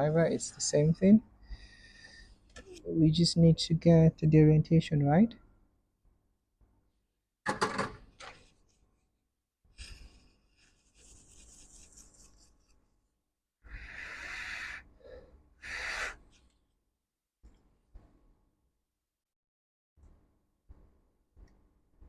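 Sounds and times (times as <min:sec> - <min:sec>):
scraping and rubbing: 0:10.6 - 0:12.8.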